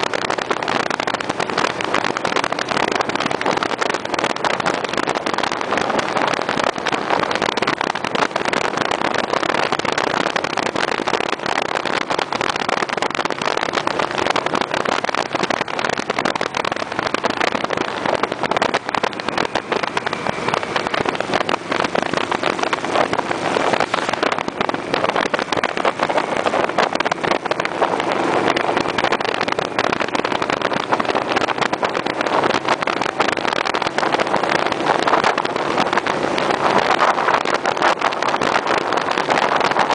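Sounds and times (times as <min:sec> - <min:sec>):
motorcycle engine running: 0:00.0 - 0:39.9
road noise: 0:00.0 - 0:39.9
wind rushing: 0:00.0 - 0:39.9.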